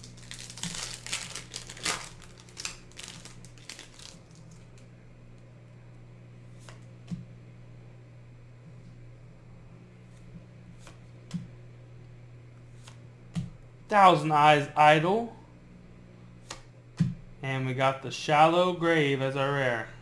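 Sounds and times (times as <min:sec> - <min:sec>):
foil wrapper crinkling: 0:00.0 - 0:04.9.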